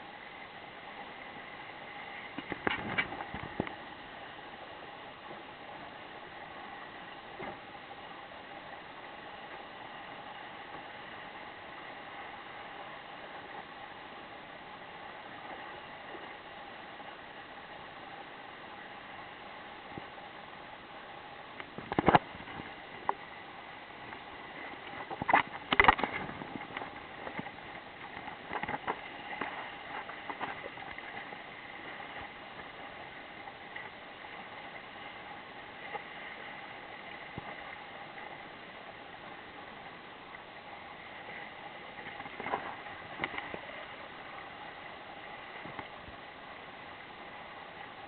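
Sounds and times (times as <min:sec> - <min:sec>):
water rushing against boat hull: 0:00.0 - 0:48.0
water splashes and knocks: 0:02.3 - 0:03.8, 0:07.3 - 0:07.7, 0:21.6 - 0:23.2, 0:24.0 - 0:32.7, 0:41.9 - 0:43.8, 0:45.6 - 0:46.2.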